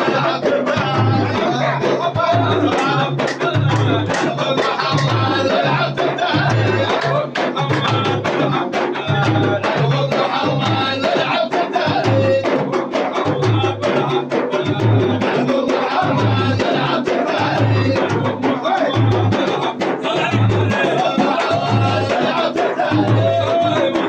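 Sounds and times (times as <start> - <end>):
hand percussion hits: 0.7 - 11.2.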